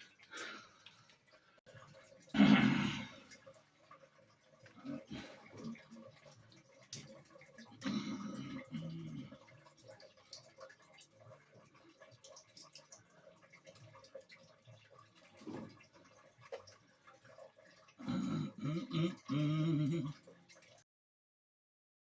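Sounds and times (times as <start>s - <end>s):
man's wordless vocal sounds: 18.0s - 20.3s.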